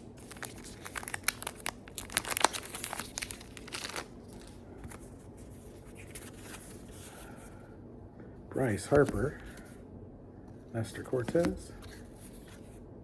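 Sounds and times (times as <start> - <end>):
wrapper tearing and crinkling: 0.2 - 4.5.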